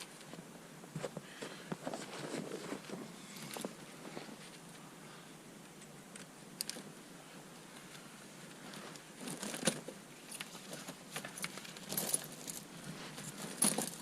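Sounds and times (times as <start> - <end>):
tire chain clinking and rattling: 9.2 - 14.0.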